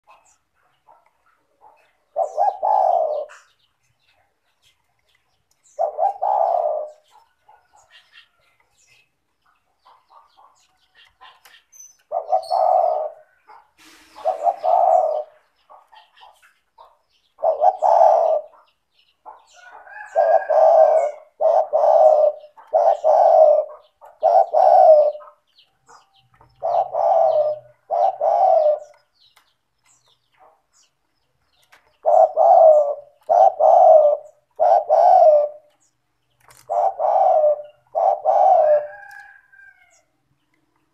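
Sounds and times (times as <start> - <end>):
dove cooing: 1.6 - 3.7, 5.6 - 8.4, 11.2 - 18.7, 19.3 - 29.1, 32.0 - 35.8, 36.4 - 40.0.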